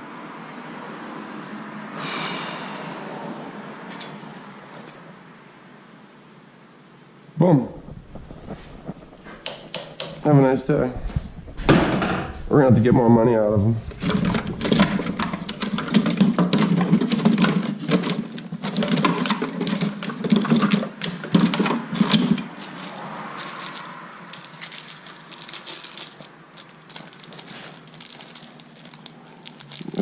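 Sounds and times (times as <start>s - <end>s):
faint rustle: 7.7s - 15.7s
small hard objects rattling: 7.8s - 12.5s, 13.8s - 30.0s.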